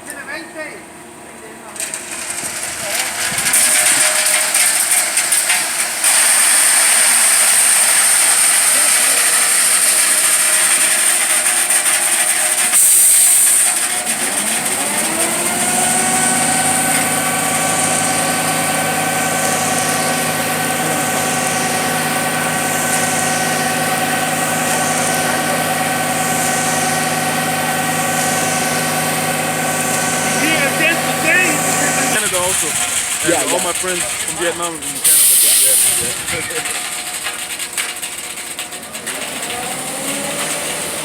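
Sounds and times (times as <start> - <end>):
truck engine revving: 2.0 - 41.0
burst of hiss: 35.0 - 36.2.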